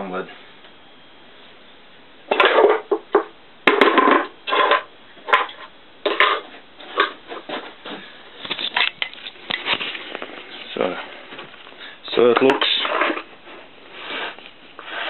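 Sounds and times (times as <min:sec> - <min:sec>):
metal clunks and scrapes: 0:03.7 - 0:09.0.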